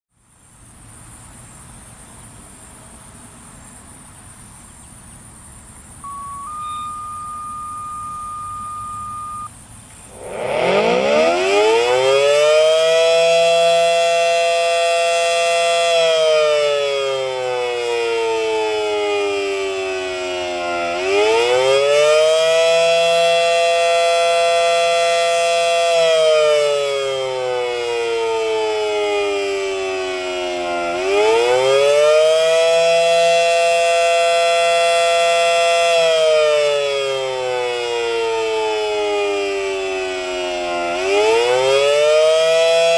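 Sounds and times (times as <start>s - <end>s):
steady beep: 6.0s - 9.5s
warning siren winding up and down: 6.0s - 42.9s.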